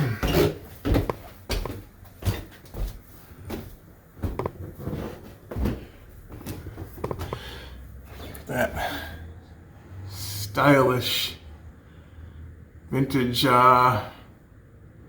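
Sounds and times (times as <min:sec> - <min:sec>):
footsteps going up stairs: 0:00.0 - 0:08.2.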